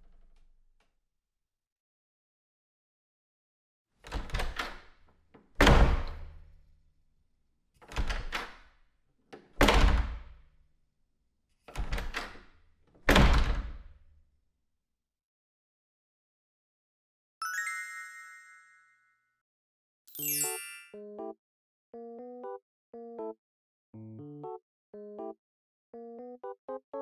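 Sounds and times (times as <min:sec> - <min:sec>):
door closing thud: 0:04.1 - 0:04.9, 0:05.6 - 0:06.4, 0:07.9 - 0:08.6, 0:09.4 - 0:10.3, 0:11.7 - 0:12.5, 0:13.1 - 0:13.9
door latch and handle clicks: 0:04.1 - 0:04.9, 0:07.8 - 0:08.7, 0:11.7 - 0:12.5.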